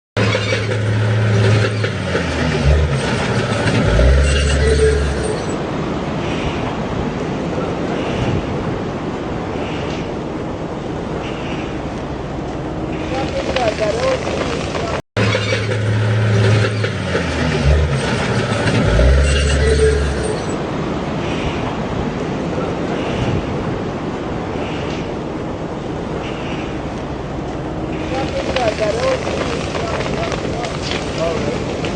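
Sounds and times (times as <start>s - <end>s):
vehicle engine running: 0.2s - 5.5s, 12.5s - 20.5s
vehicle engine drone: 0.2s - 7.9s, 8.9s - 31.9s
road and wind noise: 0.2s - 31.9s
steady rushing noise: 0.2s - 31.9s.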